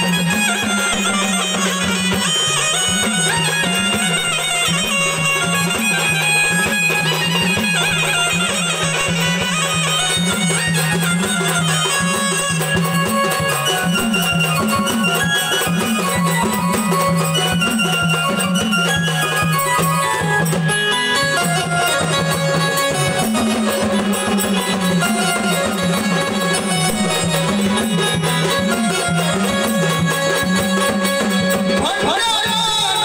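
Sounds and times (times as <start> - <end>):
instrumental folk music: 0.0 - 33.0.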